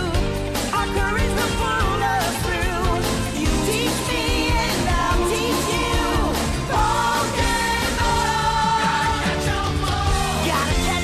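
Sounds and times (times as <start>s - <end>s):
pop song with singer: 0.0s - 11.0s.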